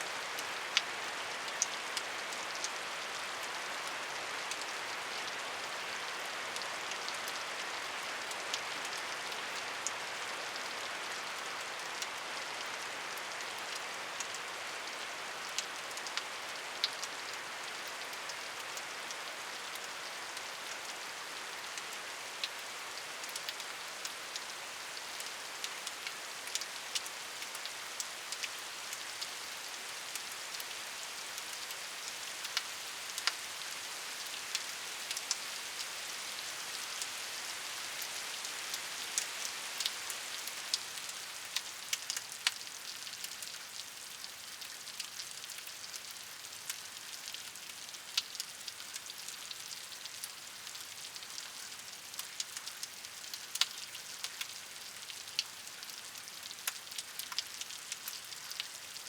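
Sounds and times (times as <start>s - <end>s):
raindrops ticking on hard surface: 21.7s - 33.5s, 34.2s - 59.0s.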